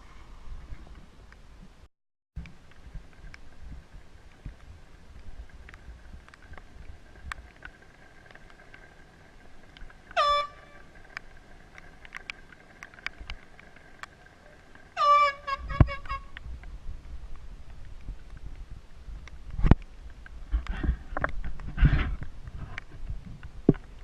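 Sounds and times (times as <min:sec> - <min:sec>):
air horn blasts: 0:10.2 - 0:10.8.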